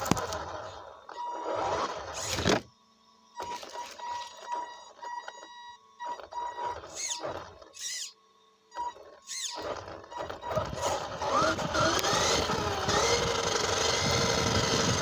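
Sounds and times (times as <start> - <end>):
toy car motor whirring: 0.0 - 2.7, 6.0 - 8.2, 8.8 - 15.0
rough driving noise: 10.6 - 15.0.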